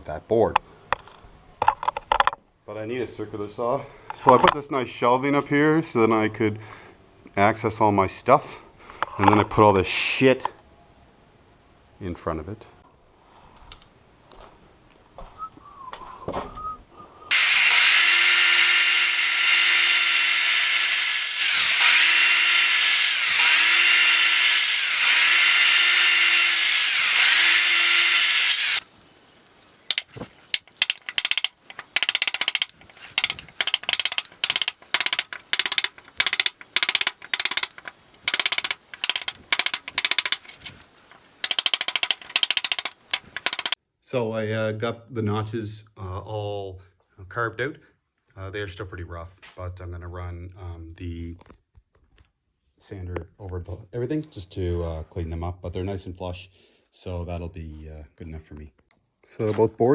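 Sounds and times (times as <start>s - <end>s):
circular saw cutting wood: 17.3s - 28.8s, 29.9s - 43.8s
short sharp tool bursts: 17.3s - 28.8s, 29.9s - 43.8s.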